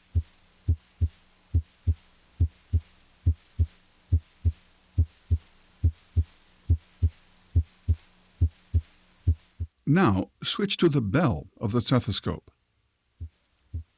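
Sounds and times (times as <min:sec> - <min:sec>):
heartbeat through stethoscope: 0:00.0 - 0:09.8, 0:13.2 - 0:13.9.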